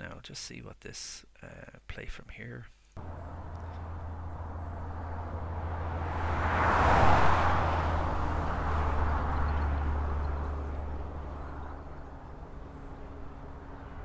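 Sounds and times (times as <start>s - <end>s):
steady low traffic hum: 2.4s - 14.0s
vehicle passing by: 3.0s - 14.0s.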